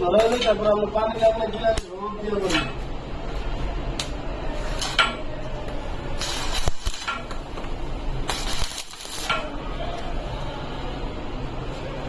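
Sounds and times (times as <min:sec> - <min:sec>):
steel parts clinking and scraping: 0:08.3 - 0:09.4.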